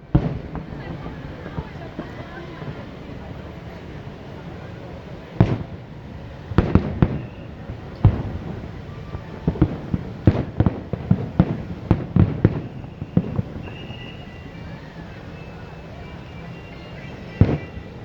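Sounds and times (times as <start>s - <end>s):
fireworks bursting: 0.0s - 18.0s.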